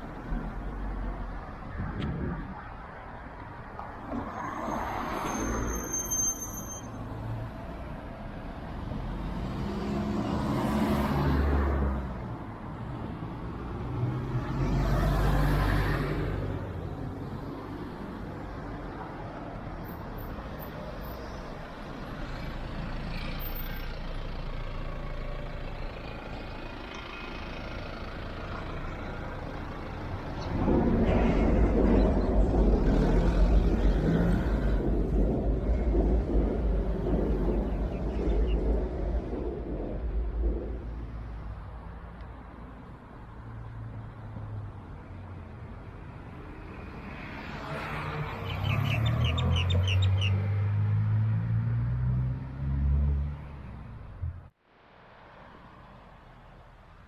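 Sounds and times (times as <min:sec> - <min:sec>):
traffic background: 0:00.0 - 0:57.0
vehicles passing: 0:00.0 - 0:57.0
high-pitched squeal: 0:04.3 - 0:07.5.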